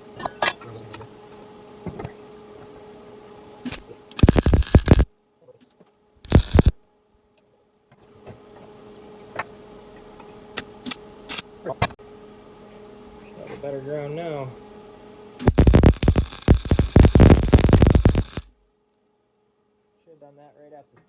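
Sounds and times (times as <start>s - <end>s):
arc welder crackling bursts: 3.7s - 5.1s, 6.3s - 6.8s, 15.4s - 18.5s
faint steady hum: 3.7s - 5.1s, 6.3s - 6.8s, 14.5s - 19.8s.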